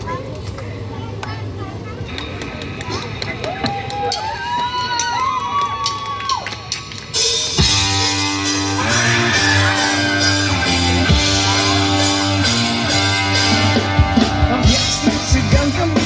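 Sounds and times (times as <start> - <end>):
rock music: 7.1 - 16.0.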